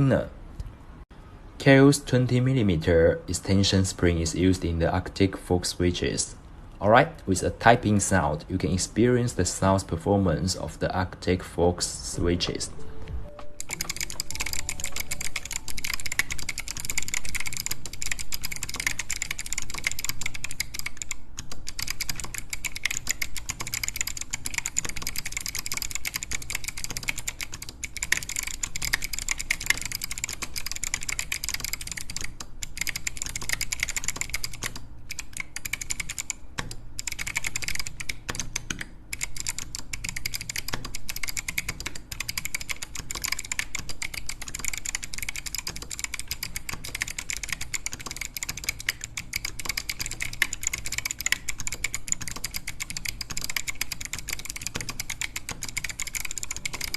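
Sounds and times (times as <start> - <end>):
typing on mechanical keyboard: 13.2 - 56.9.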